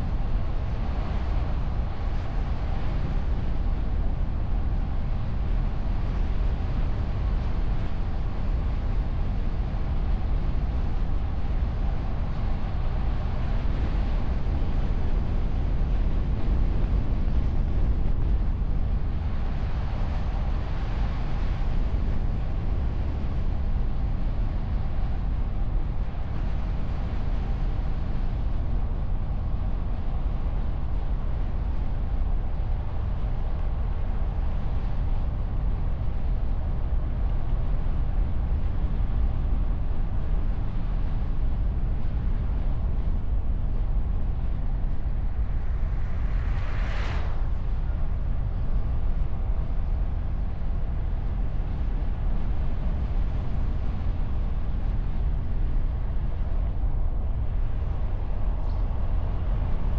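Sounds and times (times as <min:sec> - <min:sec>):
air rushing past: 0:45.7 - 0:48.0.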